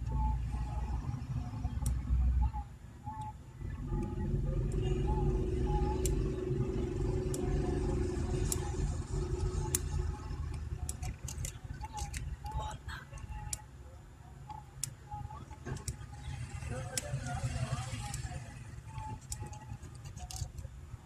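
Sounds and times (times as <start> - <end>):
low background rumble: 0.0 - 21.0
metal tools clicking on circuit board: 5.9 - 13.6, 14.6 - 20.7.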